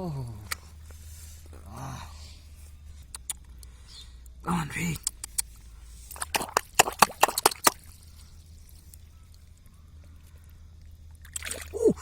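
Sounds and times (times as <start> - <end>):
water splashing: 4.8 - 9.0, 11.1 - 12.0.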